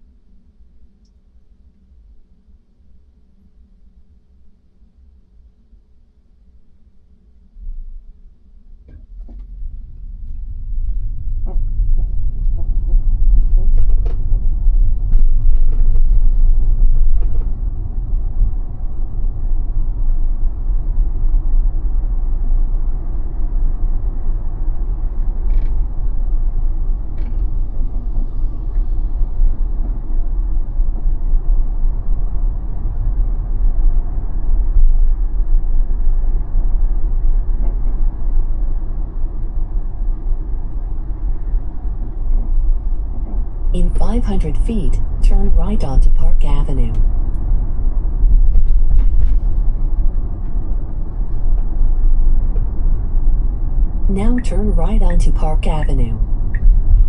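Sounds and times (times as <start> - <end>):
road and tyre rumble: 9.2 - 43.7, 47.0 - 54.1.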